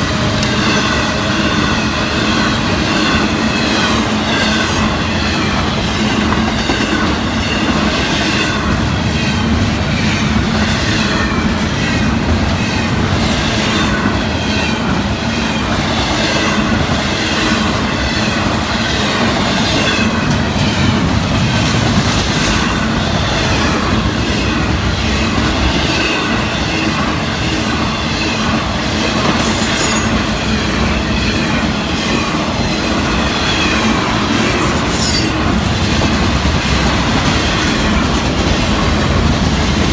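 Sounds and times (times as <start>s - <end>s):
freight train wheels clacking: 0.0s - 39.9s.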